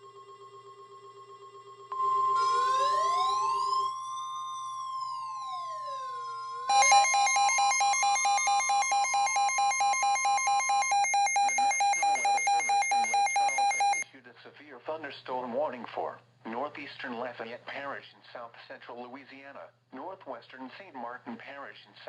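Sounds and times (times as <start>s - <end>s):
rapidly pulsing alarm tone: 0.0s - 14.0s
siren wailing up and down: 2.0s - 14.0s
steady high alert tone: 5.0s - 14.0s.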